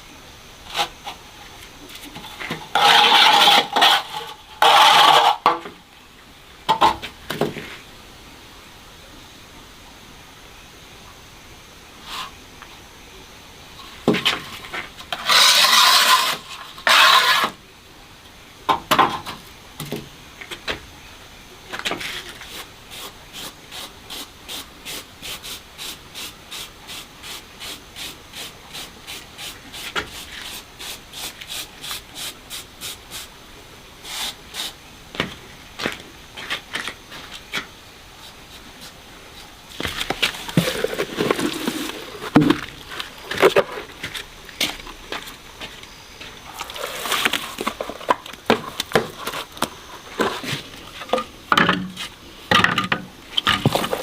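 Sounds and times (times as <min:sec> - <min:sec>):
hand tool scraping: 0:01.9 - 0:05.7, 0:14.1 - 0:17.6, 0:38.2 - 0:45.3, 0:46.2 - 0:52.2, 0:53.4 - 0:54.0
hissing bursts: 0:34.0 - 0:34.8.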